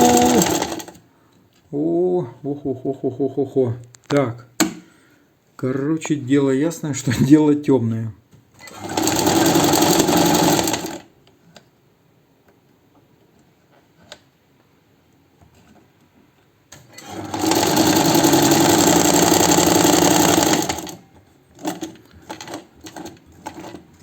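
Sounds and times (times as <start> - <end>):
sewing machine sewing: 0.0 - 1.0, 8.6 - 11.1, 16.8 - 24.0.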